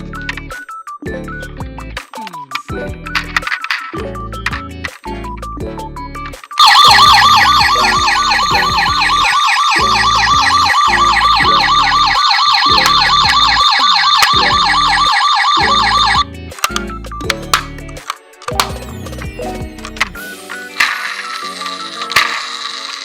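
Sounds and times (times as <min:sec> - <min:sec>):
background music: 0:00.0 - 0:23.0
ambulance siren warbling: 0:06.6 - 0:16.3.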